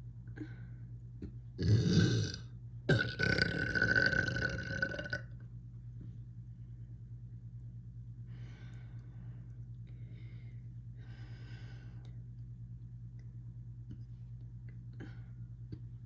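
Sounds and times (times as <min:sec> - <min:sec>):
person burping loudly: 0:01.6 - 0:05.3.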